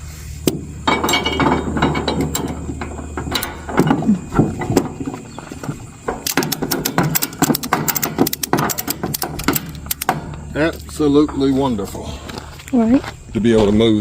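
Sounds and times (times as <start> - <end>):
metallic clicks and clanks: 0.4 - 11.5.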